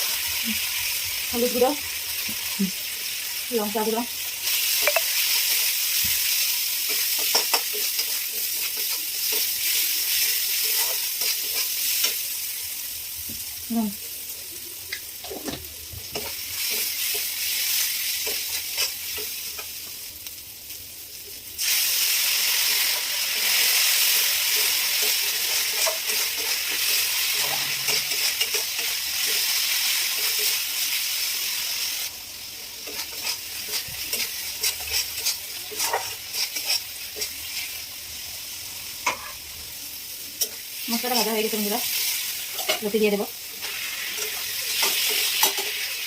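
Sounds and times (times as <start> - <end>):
paste sizzling in hot oil: 0.0 - 46.0
spatula scraping a pan: 6.9 - 12.2, 22.8 - 30.6, 32.8 - 37.7.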